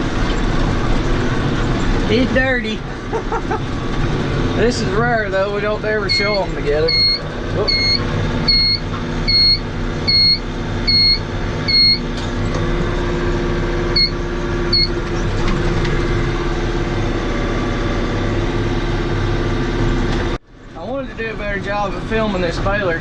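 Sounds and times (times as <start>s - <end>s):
tractor engine running under load: 0.0s - 23.0s
short electronic beep: 6.1s - 12.1s, 14.0s - 15.0s.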